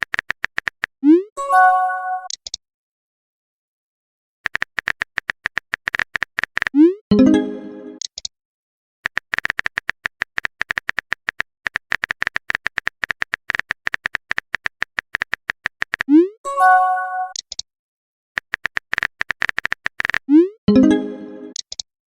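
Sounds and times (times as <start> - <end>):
phone keyboard typing clicks: 0.0 - 1.0, 4.4 - 6.8, 9.0 - 16.1, 18.4 - 20.3, 21.4 - 21.9
message sent chime: 1.4 - 2.3, 7.1 - 8.0, 16.5 - 17.4, 20.7 - 21.6.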